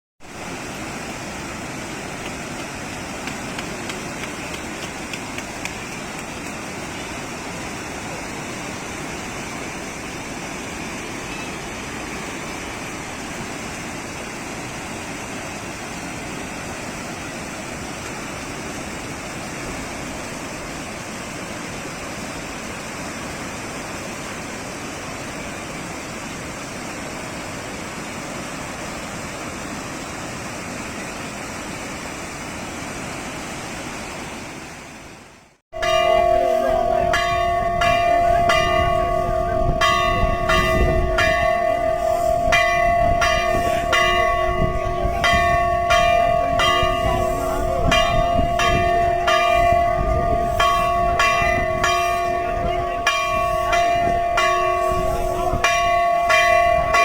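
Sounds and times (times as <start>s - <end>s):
fast river water rushing: 0.2s - 57.0s.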